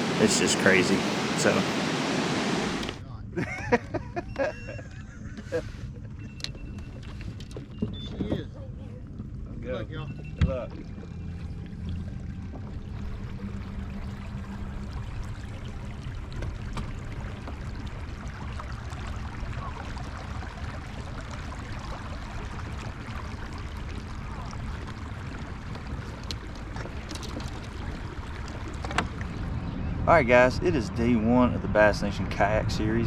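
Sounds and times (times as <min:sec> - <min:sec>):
rushing water: 0:00.0 - 0:03.0, 0:11.5 - 0:30.9.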